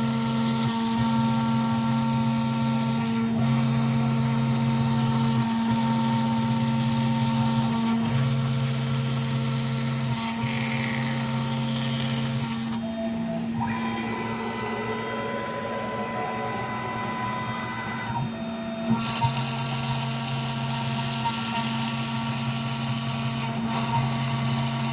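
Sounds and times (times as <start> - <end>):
milling machine whine: 13.4 - 19.2
high tone: 13.6 - 18.6.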